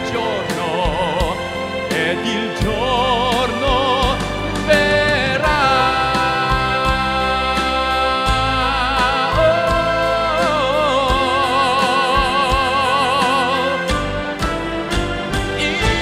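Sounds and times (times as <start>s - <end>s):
instrumental accompaniment: 0.0s - 16.0s
person singing sustained notes: 2.2s - 13.9s.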